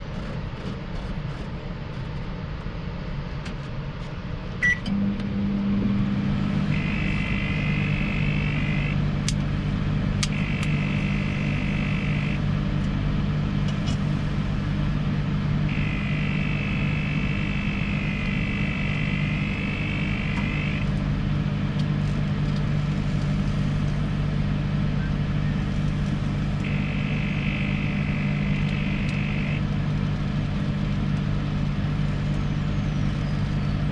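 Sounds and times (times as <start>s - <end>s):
microwave beep: 4.6s - 5.4s, 6.6s - 9.0s, 10.3s - 12.5s, 15.6s - 21.0s, 22.8s - 29.8s
microwave oven humming: 4.6s - 33.9s.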